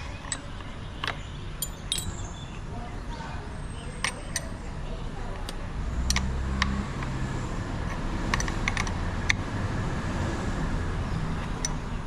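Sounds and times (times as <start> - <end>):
tools clicking and tapping: 0.0 - 2.2, 11.4 - 11.8.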